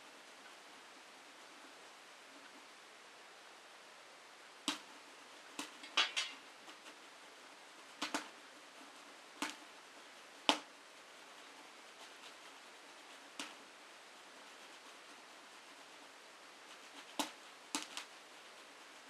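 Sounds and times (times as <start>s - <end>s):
popcorn popping in metal pot: 5.6s - 6.4s.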